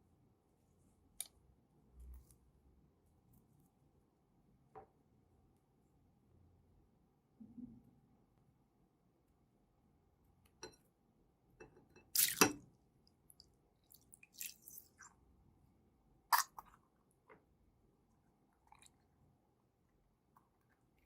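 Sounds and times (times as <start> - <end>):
slime squishing in hands: 12.2 - 12.5, 13.9 - 15.1.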